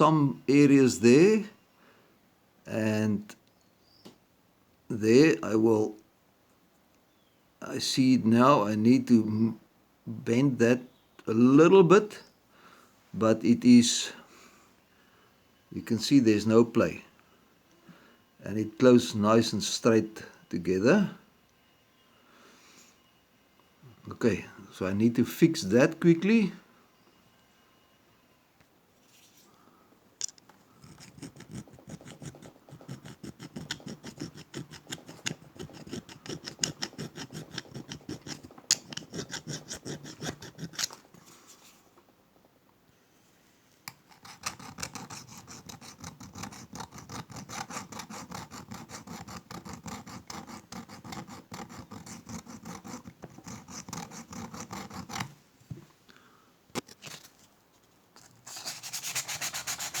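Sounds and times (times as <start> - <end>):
abrasive rasping on metal pliers: 30.8 - 41.2, 43.9 - 55.3.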